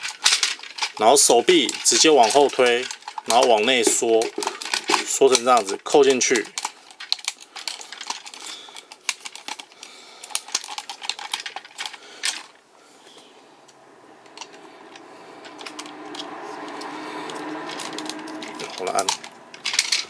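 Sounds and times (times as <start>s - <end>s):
plastic toy parts clicking: 0.0s - 12.6s, 14.2s - 20.0s
steady hum: 12.7s - 20.0s.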